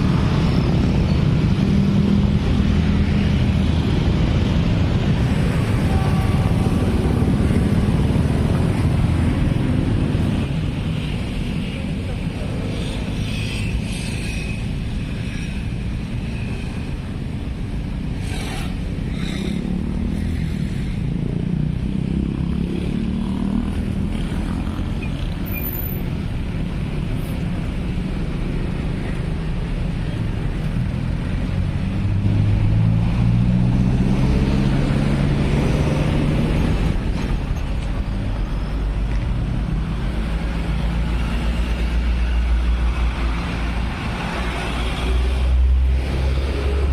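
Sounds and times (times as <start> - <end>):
cars and motorcycles passing: 0.0 - 46.9.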